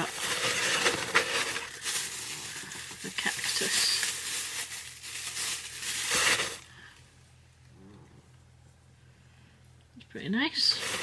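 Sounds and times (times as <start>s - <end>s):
packaging crinkling: 0.0s - 6.9s.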